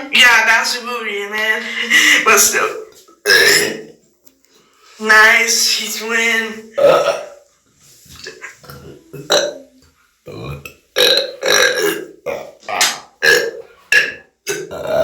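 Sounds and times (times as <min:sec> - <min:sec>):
loud burps: 0:03.2 - 0:04.0, 0:06.8 - 0:07.4, 0:08.2 - 0:15.0.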